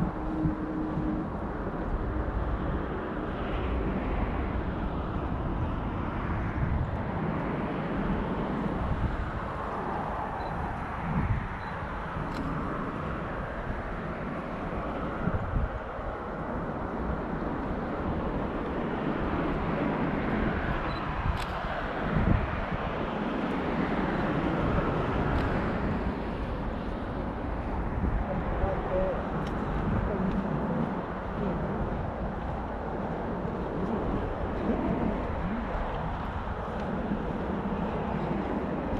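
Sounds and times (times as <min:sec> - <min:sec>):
distant vehicle engine rumble: 0:16.6 - 0:38.9.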